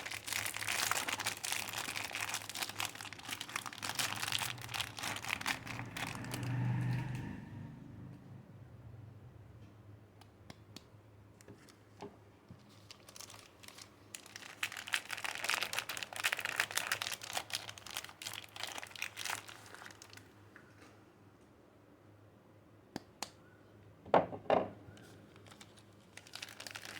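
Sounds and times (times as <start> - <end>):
wrapper crinkling: 0.0 - 6.6, 12.6 - 20.4, 25.0 - 26.9.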